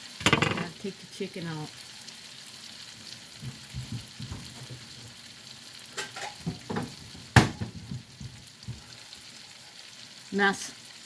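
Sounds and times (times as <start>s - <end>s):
chicken sizzling in a pan: 0.0s - 11.0s
metal tongs clacking on pan: 0.1s - 0.7s.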